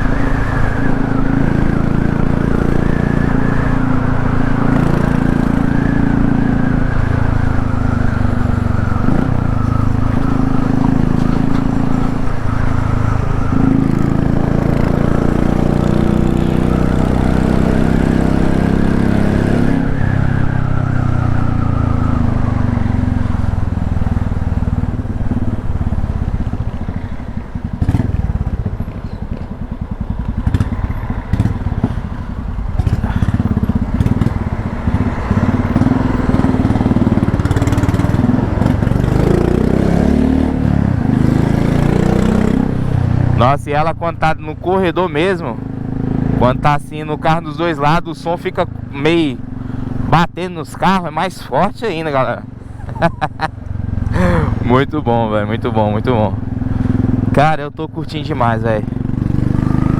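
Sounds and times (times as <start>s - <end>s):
motorcycle engine exhaust note: 0.0s - 43.9s.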